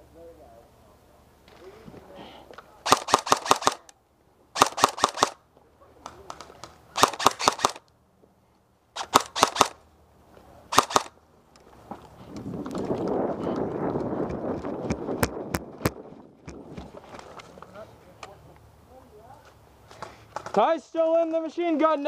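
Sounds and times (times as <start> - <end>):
airsoft gun firing bursts: 2.8 - 3.9, 4.6 - 5.4, 7.0 - 7.8, 9.0 - 9.8, 10.7 - 11.1.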